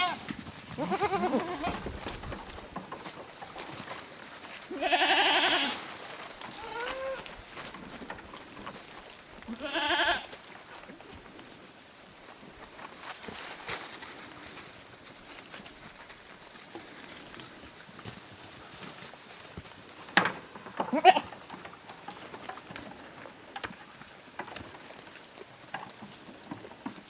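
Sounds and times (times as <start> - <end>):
goats bleating: 0.0 - 1.9, 4.7 - 5.8, 6.5 - 7.3, 9.5 - 10.3, 20.9 - 21.3.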